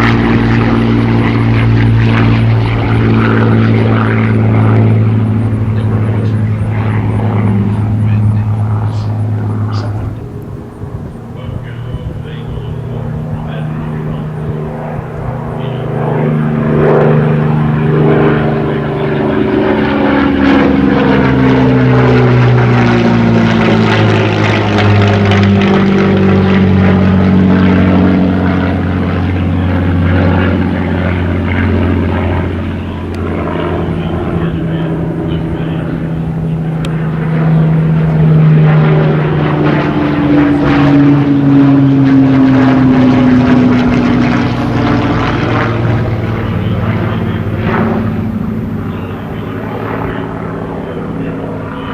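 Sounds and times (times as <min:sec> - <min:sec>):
propeller plane flying past: 0:00.0 - 0:51.9.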